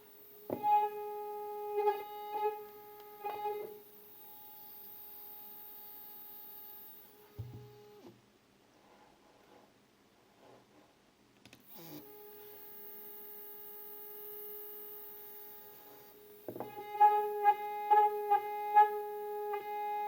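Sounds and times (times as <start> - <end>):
click: 11.4 - 11.7
rough buzzing stutters: 11.7 - 20.0
stepper motor whine: 11.7 - 20.0.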